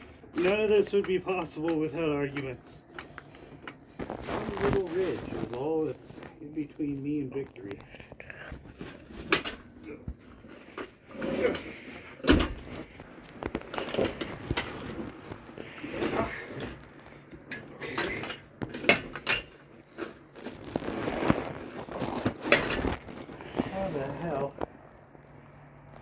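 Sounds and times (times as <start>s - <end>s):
heavy engine block clunking and scraping: 0.0s - 4.0s, 7.8s - 20.2s.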